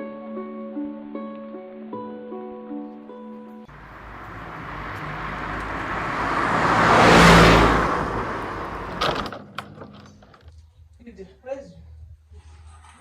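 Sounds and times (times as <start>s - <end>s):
motor vehicle passing by: 3.7s - 9.3s.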